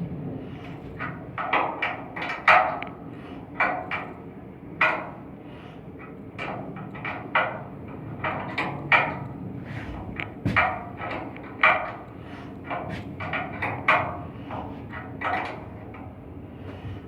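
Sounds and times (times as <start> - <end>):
steady low hum: 0.0 - 17.0
metal knocks and clanks: 10.0 - 12.1.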